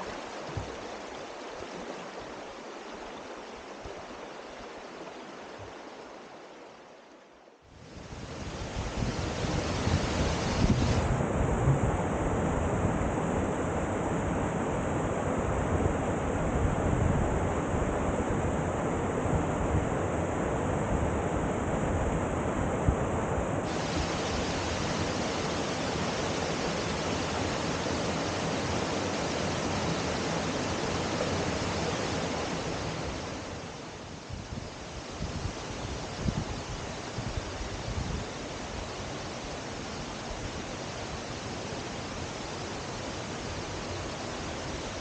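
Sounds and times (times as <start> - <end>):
waterfall rushing: 23.7 - 37.7.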